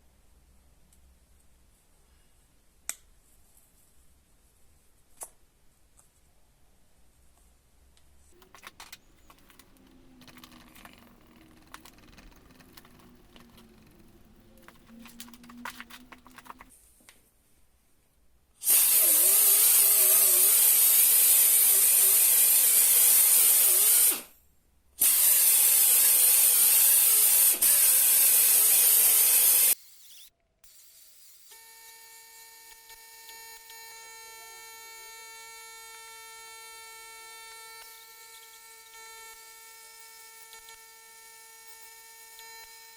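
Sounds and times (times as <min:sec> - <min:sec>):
faint clicks and handling noises: 0:07.4 - 0:17.3.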